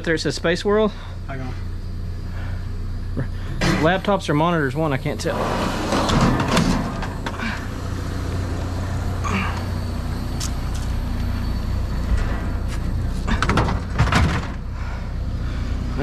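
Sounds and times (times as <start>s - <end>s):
vehicle engine idling: 0.0s - 16.0s
knocks and clatter in dumpster: 5.4s - 7.6s, 12.0s - 14.8s.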